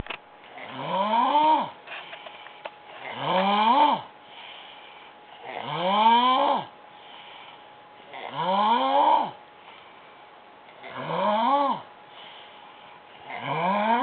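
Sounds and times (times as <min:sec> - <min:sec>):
woman snoring loudly: 0:00.6 - 0:01.8, 0:03.0 - 0:04.1, 0:05.5 - 0:06.7, 0:08.1 - 0:09.4, 0:10.8 - 0:11.9, 0:13.3 - 0:14.0
soft breathy breaths: 0:03.8 - 0:05.6, 0:06.4 - 0:14.0.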